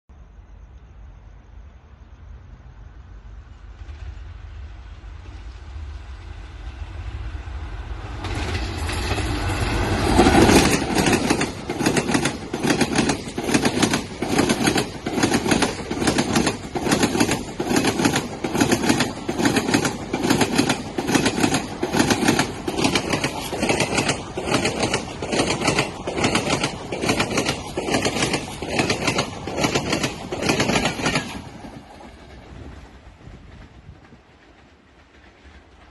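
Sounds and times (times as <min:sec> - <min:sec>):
train rumble: 0:00.2 - 0:35.9
locomotive passing burst: 0:03.6 - 0:35.9
train wheels clattering over rail joints: 0:08.2 - 0:35.9.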